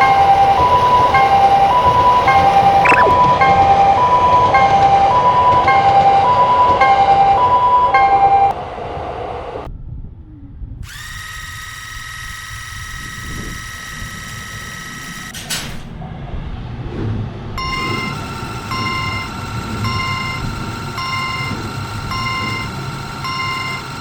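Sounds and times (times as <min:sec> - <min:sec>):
alternating electronic alarm: 0:00.0 - 0:08.6, 0:10.9 - 0:15.3, 0:17.6 - 0:24.0
beeping alarm: 0:00.0 - 0:08.6, 0:17.6 - 0:24.0
steady high alarm tone: 0:00.0 - 0:08.6, 0:17.6 - 0:24.0.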